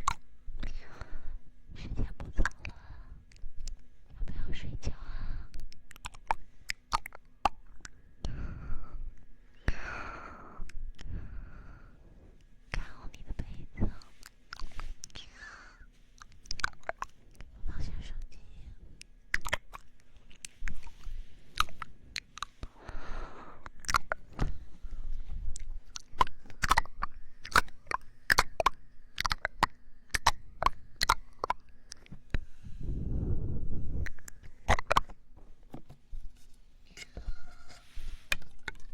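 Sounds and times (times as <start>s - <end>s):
wet mouth clicks: 0.0s - 0.8s, 2.2s - 3.8s, 5.5s - 8.4s, 12.8s - 15.5s, 16.2s - 22.9s, 23.6s - 24.5s, 25.4s - 32.5s, 33.9s - 35.2s, 36.9s - 38.9s.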